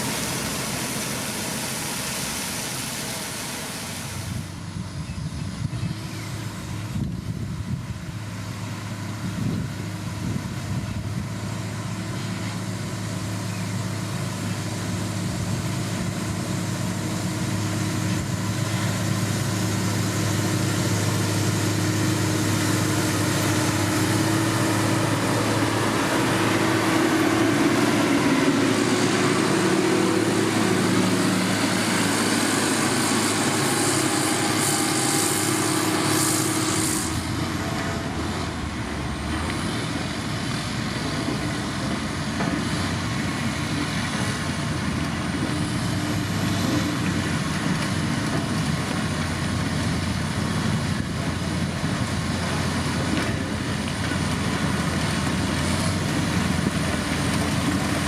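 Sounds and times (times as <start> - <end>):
construction machinery engine: 0.0 - 58.0
high whine: 17.2 - 39.6.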